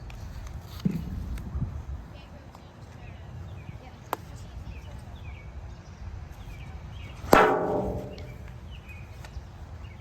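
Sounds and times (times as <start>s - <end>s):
plastic ball being struck: 7.3s - 8.6s.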